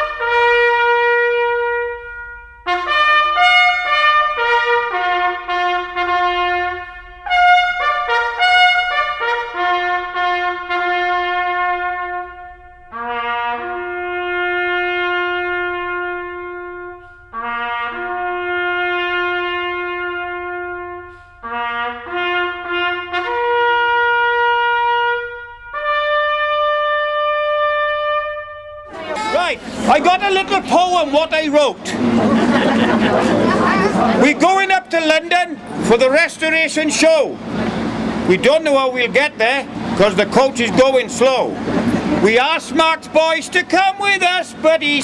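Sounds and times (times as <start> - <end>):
solo brass bugle call: 0.0 - 31.8.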